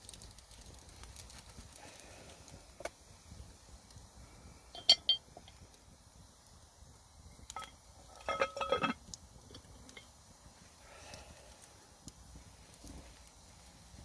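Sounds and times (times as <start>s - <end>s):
metal cookware clinking: 4.8s - 5.2s, 7.5s - 9.0s.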